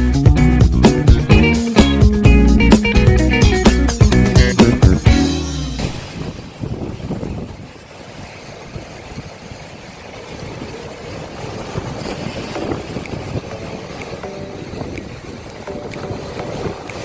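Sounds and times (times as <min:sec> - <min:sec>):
sea waves washing onto shore: 0:05.6 - 0:17.0
wind buffeting microphone: 0:05.8 - 0:17.0.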